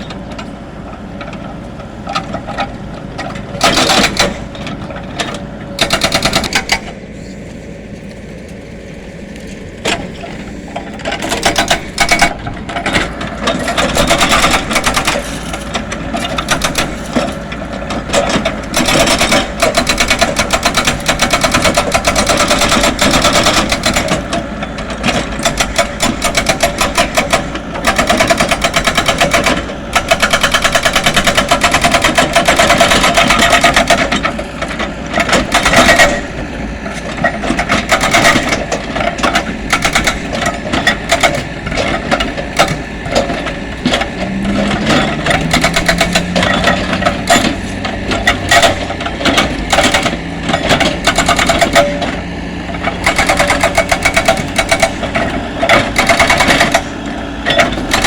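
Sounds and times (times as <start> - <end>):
low engine hum: 0.0 - 58.0
powered impact tool hammering: 3.6 - 4.4, 5.8 - 6.9, 11.0 - 17.4, 18.1 - 24.4, 25.2 - 34.3, 35.2 - 36.4, 37.6 - 41.5, 42.1 - 52.1, 52.7 - 58.0.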